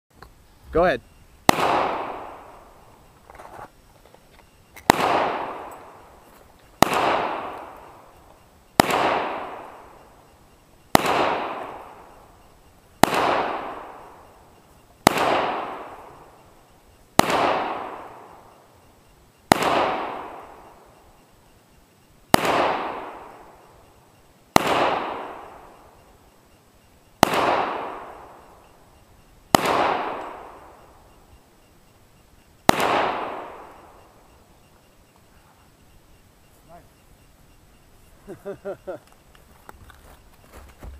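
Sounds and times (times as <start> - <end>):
pistol shots with echo: 1.5 - 2.9, 4.8 - 6.2, 6.8 - 8.2, 8.8 - 10.2, 10.9 - 12.3, 13.0 - 16.4, 17.2 - 18.5, 19.5 - 20.9, 22.3 - 23.7, 24.5 - 26.0, 27.2 - 28.6, 29.5 - 31.1, 32.6 - 34.1.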